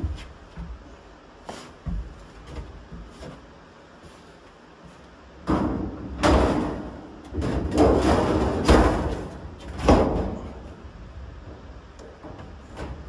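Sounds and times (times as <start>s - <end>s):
thin sheet metal banging: 5.5s - 10.6s.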